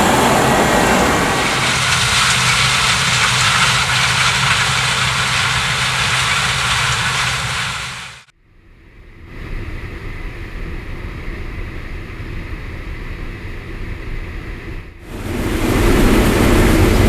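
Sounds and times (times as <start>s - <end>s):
combine harvester running: 0.0s - 8.3s, 15.1s - 17.0s.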